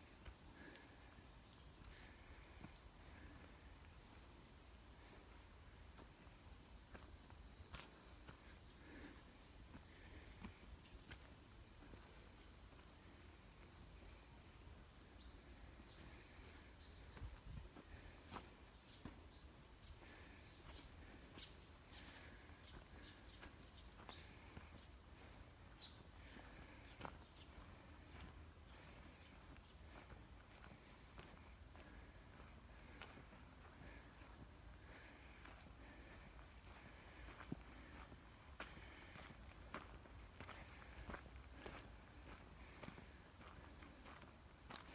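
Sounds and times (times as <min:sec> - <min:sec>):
high-pitched insect chorus: 0:00.0 - 0:44.9.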